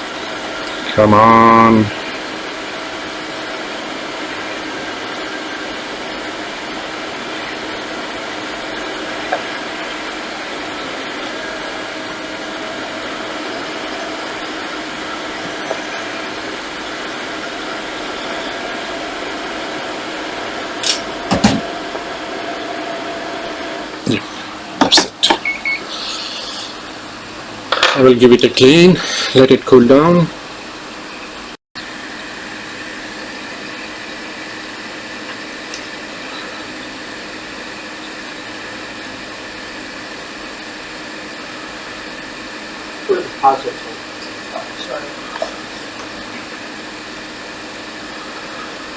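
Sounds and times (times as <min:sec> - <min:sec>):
hot air rework station blowing: 0:00.0 - 0:27.7, 0:28.5 - 0:30.3
faint fan hum: 0:00.0 - 0:48.9
sharp knocks: 0:21.3 - 0:21.8.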